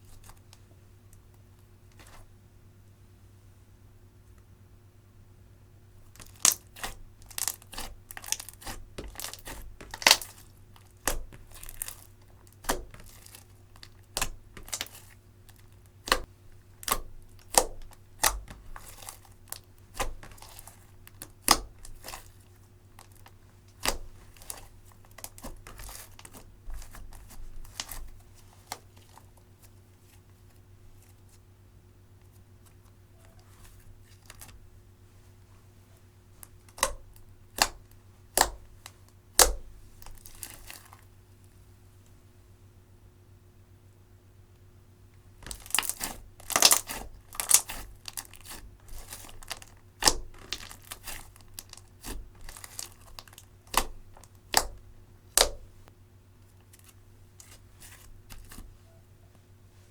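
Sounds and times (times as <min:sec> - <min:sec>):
slime squished and stretched: 0:06.1 - 0:29.2, 0:36.7 - 0:41.0, 0:45.4 - 0:55.7
slime clicking and popping: 0:16.0 - 0:19.1, 0:51.6 - 0:55.6.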